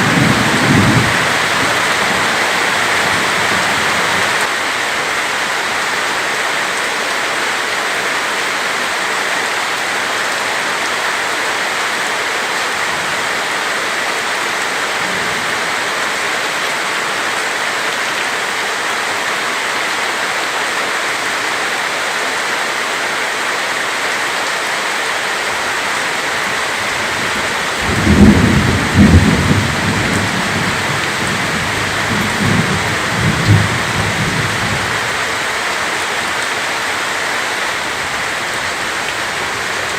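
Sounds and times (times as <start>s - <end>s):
rolling thunder: 0.0s - 2.4s, 27.3s - 34.8s
heavy rain pouring: 0.0s - 39.9s.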